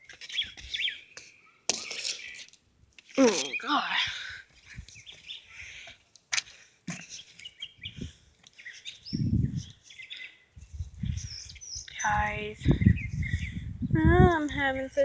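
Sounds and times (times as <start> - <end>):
small birds chirping: 0.0 - 6.1, 7.0 - 14.0.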